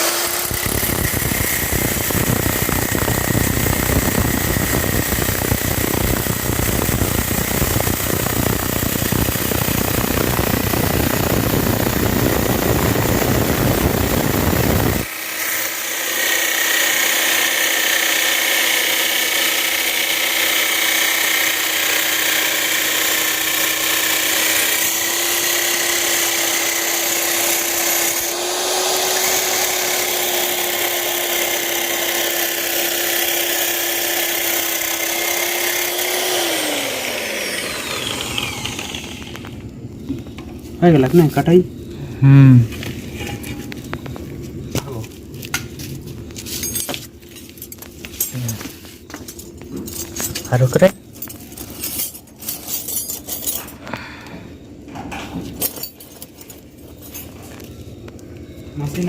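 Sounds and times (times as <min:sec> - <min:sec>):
drill cutting disc grinding pipe: 0:00.0 - 0:41.2
drill spinning free whine: 0:00.0 - 0:41.9.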